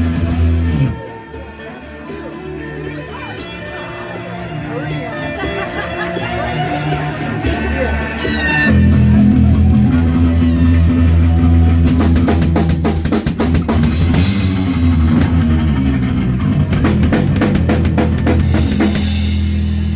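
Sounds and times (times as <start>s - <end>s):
electric guitar: 0.0s - 1.1s, 5.0s - 19.9s
bass guitar notes: 0.0s - 1.2s, 6.6s - 19.9s
drum kit hits: 11.9s - 19.9s.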